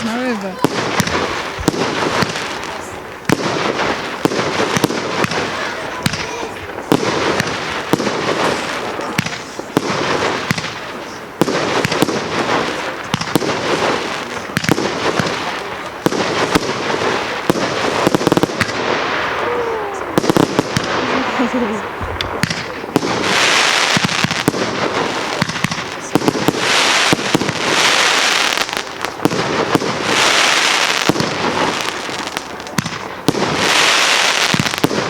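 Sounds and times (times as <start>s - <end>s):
fireworks bangs: 0.0s - 35.0s.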